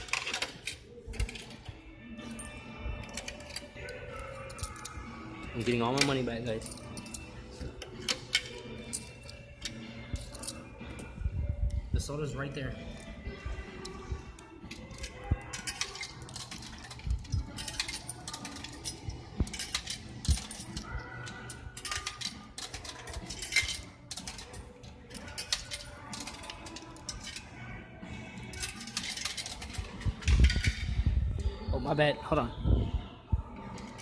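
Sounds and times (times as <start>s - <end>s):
clicks and metallic clatters: 0.0s - 1.7s, 14.7s - 27.4s, 28.5s - 31.0s
coins clinking in vending machine: 0.0s - 10.7s, 14.7s - 27.5s, 28.3s - 31.0s.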